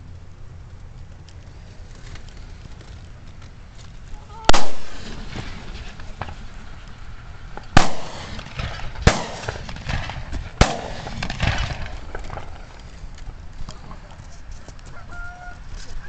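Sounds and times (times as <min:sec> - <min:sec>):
shotgun blasts with echo: 0:04.5 - 0:06.4, 0:07.7 - 0:12.6.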